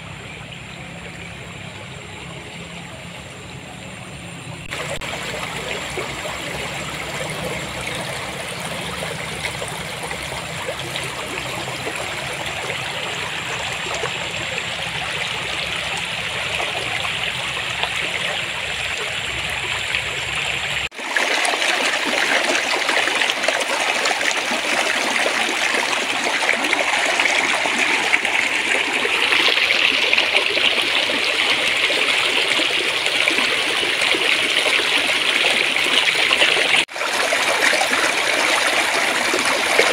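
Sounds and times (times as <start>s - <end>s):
stream babbling and trickling: 0.0s - 39.9s.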